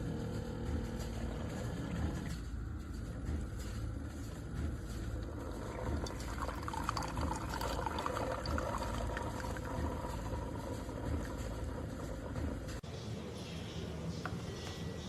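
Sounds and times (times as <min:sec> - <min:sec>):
coffee maker pump hum: 0:00.0 - 0:15.0
liquid trickling into a cup: 0:05.2 - 0:12.4.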